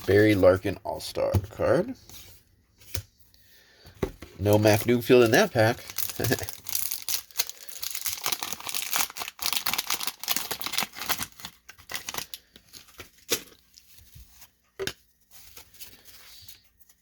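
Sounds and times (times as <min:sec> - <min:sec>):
wax wrapper tearing and crinkling: 0:04.8 - 0:12.5.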